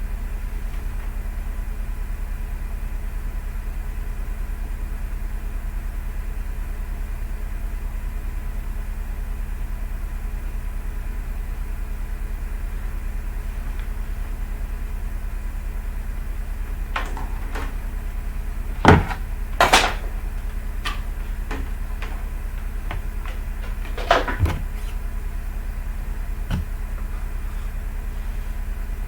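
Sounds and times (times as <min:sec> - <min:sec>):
low electrical hum: 0:11.5 - 0:29.0
laptop being handled knocks: 0:17.0 - 0:17.9, 0:18.8 - 0:25.0, 0:26.5 - 0:26.7.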